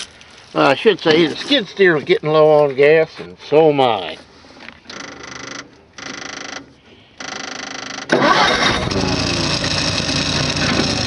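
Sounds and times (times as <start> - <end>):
engine starter cranking: 4.9 - 11.0
engine running: 7.4 - 11.0.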